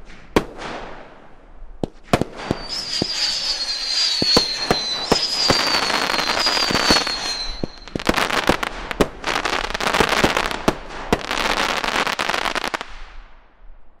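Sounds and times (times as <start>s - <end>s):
firework bangs: 0.0s - 13.2s
firework crackling: 1.8s - 13.2s
firework whistle: 2.4s - 8.6s.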